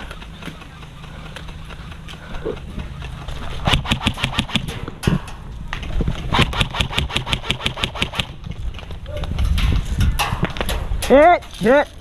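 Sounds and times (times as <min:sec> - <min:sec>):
airsoft guns firing bursts: 0:03.5 - 0:04.8, 0:06.3 - 0:08.4.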